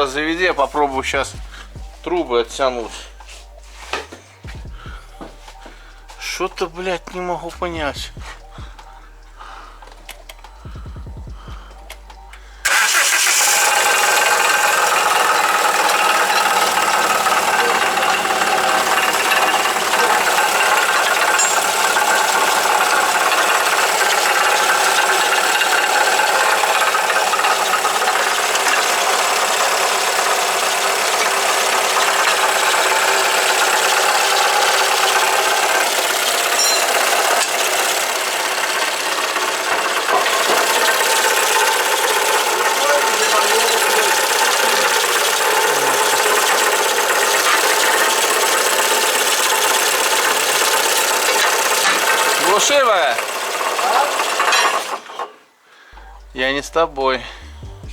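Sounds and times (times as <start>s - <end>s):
car engine running: 0.0s - 55.1s, 56.0s - 57.9s
knocking rattle: 12.0s - 55.4s.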